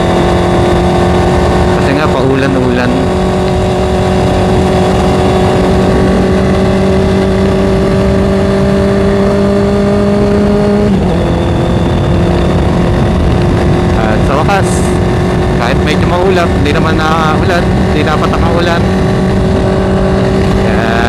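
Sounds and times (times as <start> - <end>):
motorcycle engine cruising: 0.0 - 21.0
wind and road noise: 0.0 - 21.0.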